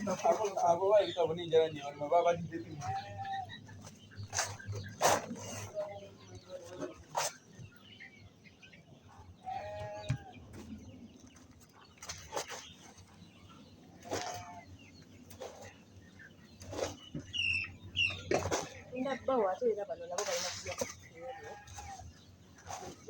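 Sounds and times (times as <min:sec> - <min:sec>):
chickens clucking: 0:00.0 - 0:23.0.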